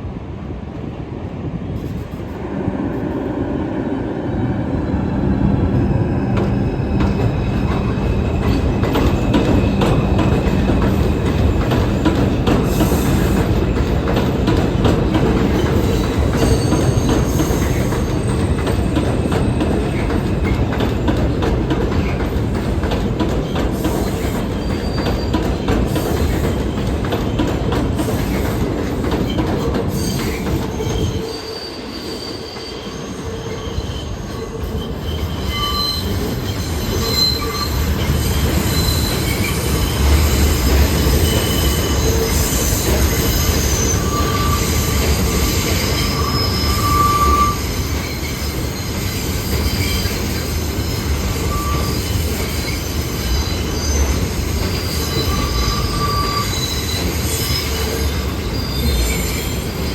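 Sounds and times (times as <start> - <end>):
subway train rumble: 0.0 - 59.9
high-pitched wheel squeals: 29.9 - 59.9.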